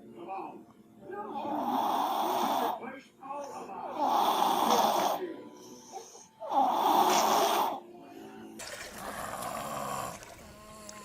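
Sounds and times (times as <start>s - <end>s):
baby snoring: 1.4s - 2.8s, 3.9s - 5.2s, 5.9s - 7.8s, 8.9s - 11.0s
baby breathing: 8.9s - 11.0s.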